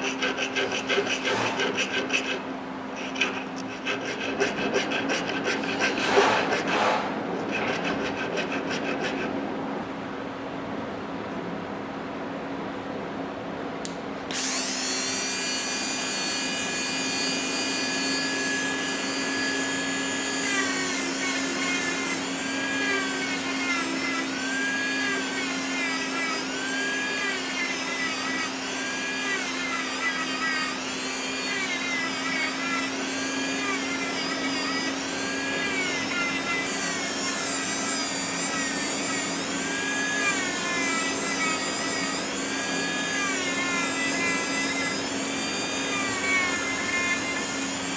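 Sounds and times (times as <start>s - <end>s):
power tool whining: 0.0s - 9.4s, 14.3s - 47.9s.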